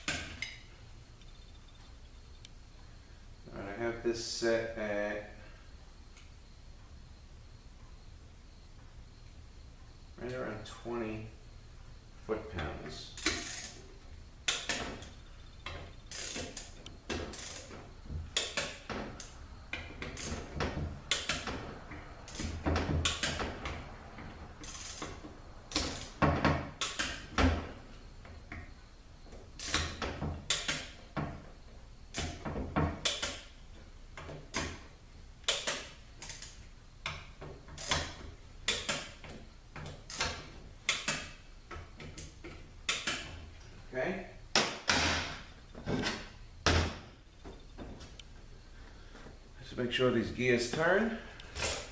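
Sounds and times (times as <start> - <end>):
torque wrench clicking: 13.2 - 13.8, 16.1 - 17.7, 24.6 - 26.2, 29.6 - 29.9, 35.4 - 37.2.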